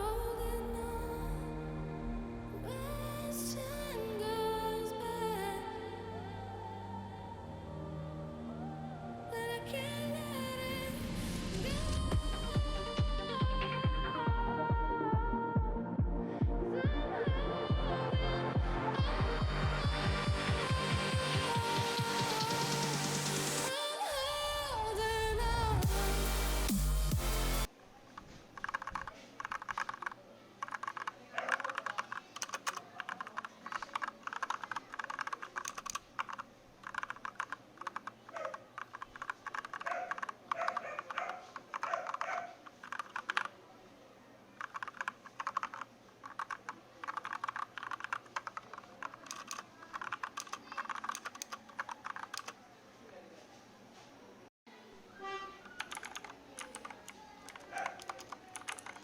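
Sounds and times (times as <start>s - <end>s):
typing on mechanical keyboard: 28.2s - 43.5s, 44.6s - 52.6s, 55.6s - 59.0s.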